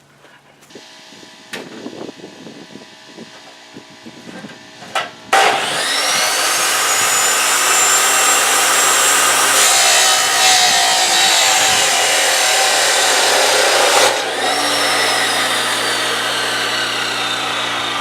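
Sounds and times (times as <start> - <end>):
power tool grinding metal: 5.3 - 18.0.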